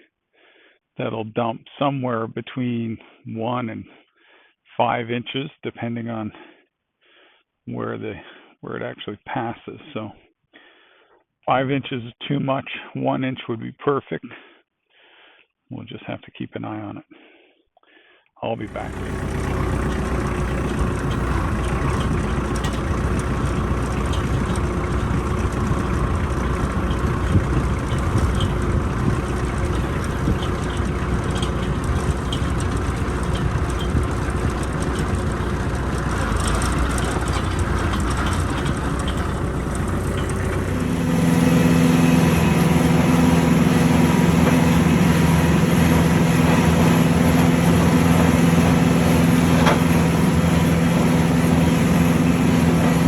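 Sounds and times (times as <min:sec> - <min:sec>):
engine running: 0:18.6 - 0:53.0
wind rumble on microphone: 0:24.2 - 0:35.3.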